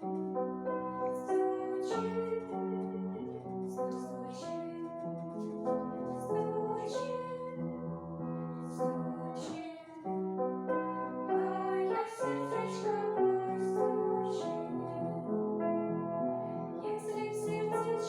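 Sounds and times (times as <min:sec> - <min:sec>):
person singing: 0:08.7 - 0:10.1, 0:11.3 - 0:15.2, 0:16.8 - 0:18.0.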